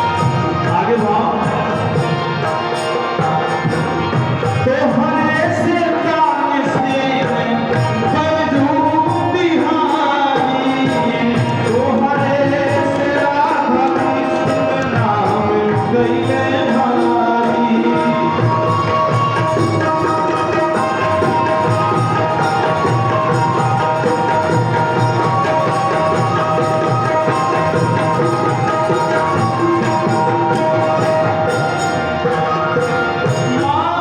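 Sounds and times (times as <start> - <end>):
hand drum rhythm: 0.0 - 34.0
jingling percussion: 0.0 - 34.0
melody instrument holding notes: 7.0 - 34.0.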